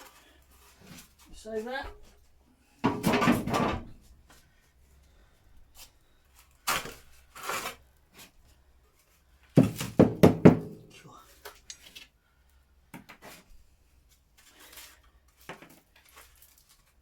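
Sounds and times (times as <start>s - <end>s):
knocks and scrapes: 2.8s - 4.1s
tools and parts clattering: 2.8s - 4.1s.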